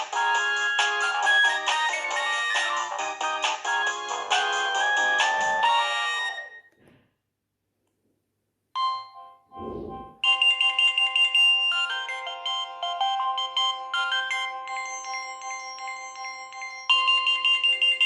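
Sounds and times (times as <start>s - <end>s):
phone ringtone melody: 0.2s - 6.6s, 10.2s - 18.0s.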